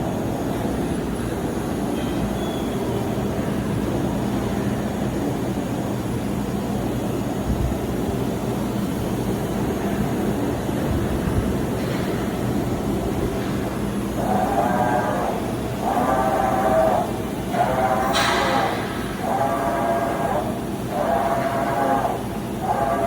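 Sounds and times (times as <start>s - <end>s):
surface grinder humming: 14.2s - 23.0s.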